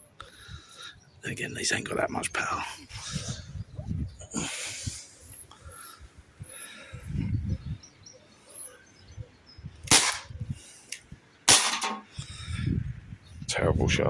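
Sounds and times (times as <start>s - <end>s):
pellet revolver shots: 9.9s - 10.4s, 11.5s - 12.1s.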